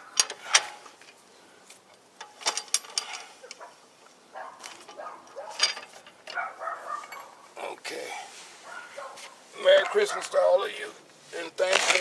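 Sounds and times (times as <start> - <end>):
hand tools clicking and knocking: 0.0 - 3.7, 4.6 - 7.4.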